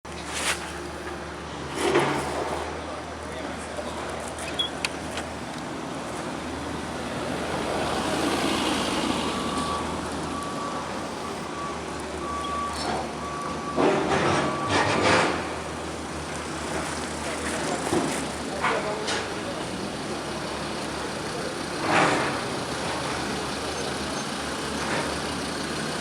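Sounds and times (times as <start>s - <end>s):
heavy vehicle engine running: 0.1s - 26.0s
short electronic beeps: 4.6s - 4.8s.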